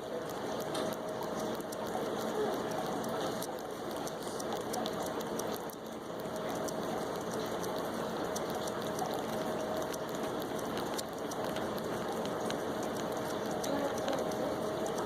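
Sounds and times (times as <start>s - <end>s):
cat licking and slurping: 0.0s - 15.0s.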